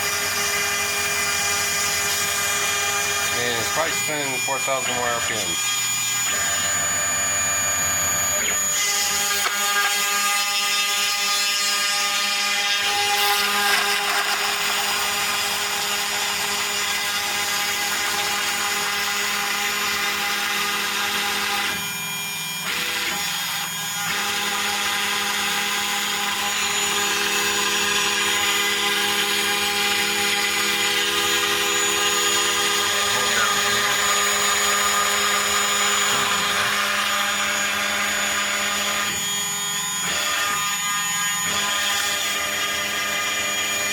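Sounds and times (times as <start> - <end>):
router motor tones: 0.0 - 43.9
spindle high whine: 2.2 - 9.6, 26.6 - 41.6.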